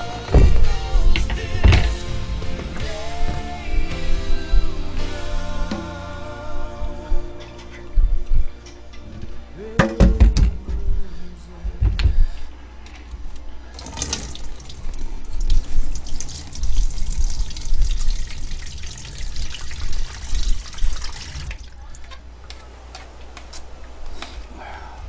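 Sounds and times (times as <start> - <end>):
water running from a tap: 13.7 - 22.1.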